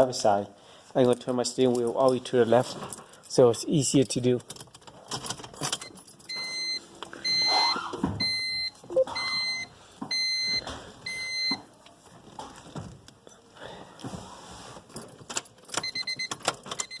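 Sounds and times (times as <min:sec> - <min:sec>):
car warning chime beeping: 0:06.3 - 0:11.6.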